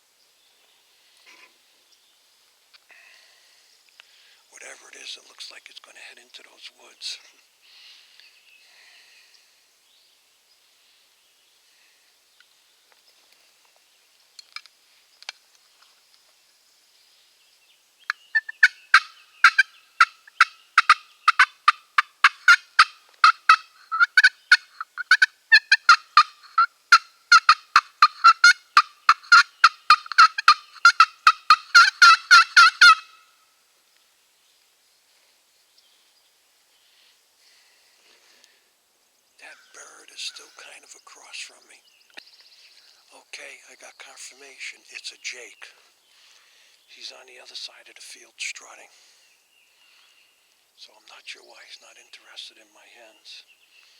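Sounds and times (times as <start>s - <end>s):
turkey call yelping: 18.4s - 33.3s.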